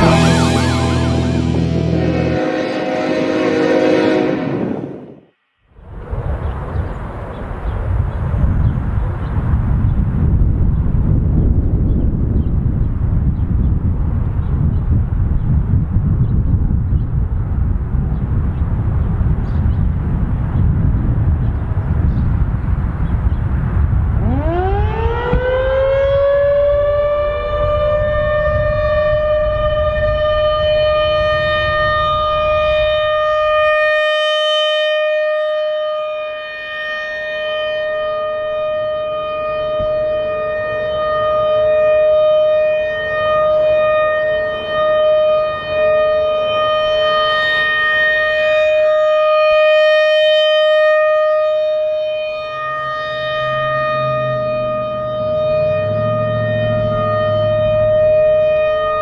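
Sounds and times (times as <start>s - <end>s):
rotating warning siren: 0.0s - 5.3s, 23.7s - 59.0s.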